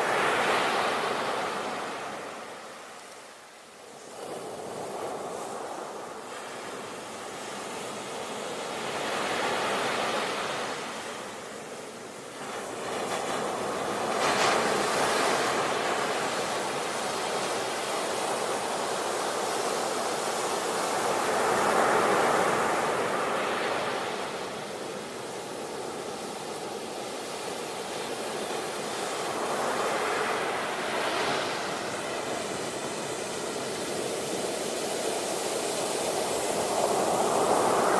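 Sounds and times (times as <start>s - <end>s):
ocean waves breaking: 12.5s - 37.9s.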